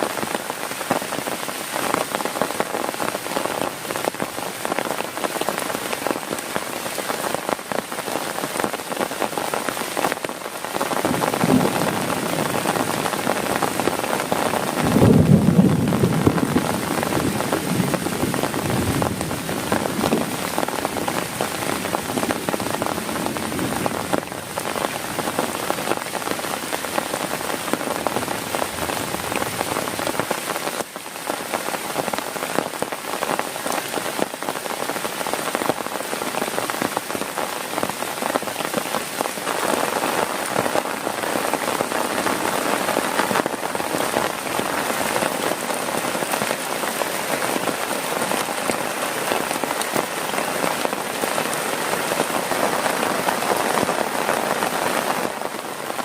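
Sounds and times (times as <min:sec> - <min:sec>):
heavy rain on a tent: 0:00.0 - 0:56.0.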